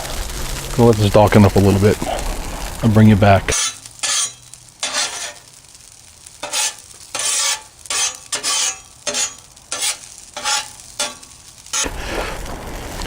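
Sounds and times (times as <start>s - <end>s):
rice sizzling: 0.0s - 13.0s
metal spatula scraping griddle: 3.5s - 5.6s, 6.3s - 12.5s.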